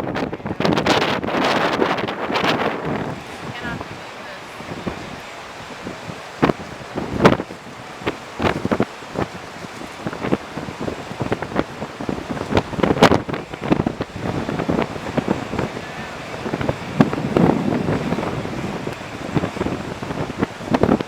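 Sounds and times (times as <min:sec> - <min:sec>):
storm surf rushing: 0:00.0 - 0:21.0
storm wind buffeting microphone: 0:00.0 - 0:21.0.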